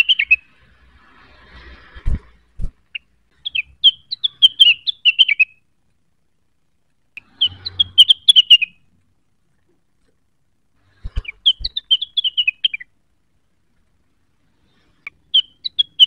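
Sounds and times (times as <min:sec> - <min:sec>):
songbird chirping: 0:00.0 - 0:00.7, 0:02.9 - 0:13.3, 0:14.5 - 0:16.0.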